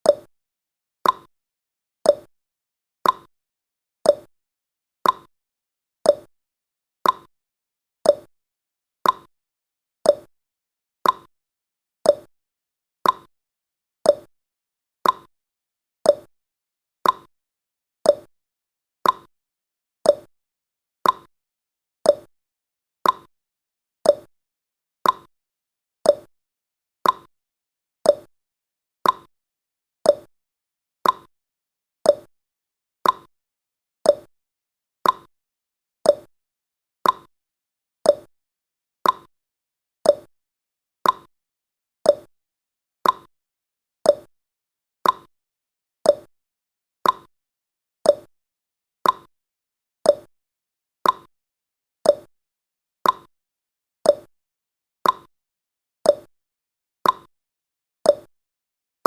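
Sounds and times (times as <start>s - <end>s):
clock tick-tock: 0.0s - 0.3s, 1.0s - 1.3s, 2.1s - 2.3s, 3.0s - 3.3s, 4.1s - 4.3s, 5.0s - 5.3s, 6.1s - 6.3s, 7.0s - 7.3s, 8.1s - 8.3s, 9.0s - 9.3s, 10.1s - 10.3s, 11.0s - 11.3s, 12.1s - 12.3s, 13.0s - 13.3s, 14.1s - 14.3s, 15.0s - 15.3s, 16.1s - 16.3s, 17.0s - 17.3s, 18.0s - 18.3s, 19.0s - 19.3s, 20.0s - 20.3s, 21.0s - 21.3s, 22.0s - 22.3s, 23.0s - 23.3s, 24.0s - 24.3s, 25.0s - 25.3s, 26.0s - 26.3s, 27.0s - 27.3s, 28.0s - 28.3s, 29.0s - 29.3s, 30.0s - 30.3s, 31.0s - 31.3s, 32.0s - 32.3s, 33.0s - 33.3s, 34.0s - 34.3s, 35.0s - 35.3s, 36.0s - 36.3s, 37.0s - 37.3s, 38.0s - 38.3s, 39.0s - 39.3s, 40.0s - 40.3s, 41.0s - 41.3s, 42.0s - 42.3s, 43.0s - 43.3s, 44.0s - 44.3s, 45.0s - 45.3s, 46.0s - 46.3s, 47.0s - 47.3s, 48.0s - 48.3s, 49.0s - 49.3s, 50.0s - 50.3s, 51.0s - 51.3s, 52.0s - 52.3s, 53.0s - 53.3s, 54.1s - 54.3s, 55.0s - 55.3s, 56.1s - 56.3s, 57.0s - 57.3s, 58.1s - 58.3s.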